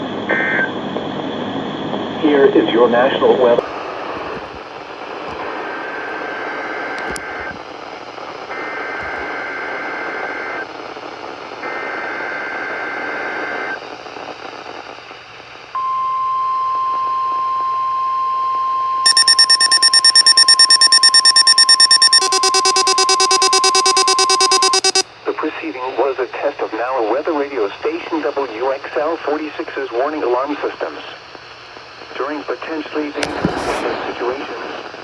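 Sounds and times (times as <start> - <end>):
buzzy two-tone data bursts: 19.1 - 25.0
electronic alarm beeping: 19.1 - 25.0
steady warning alarm tone: 19.1 - 25.0.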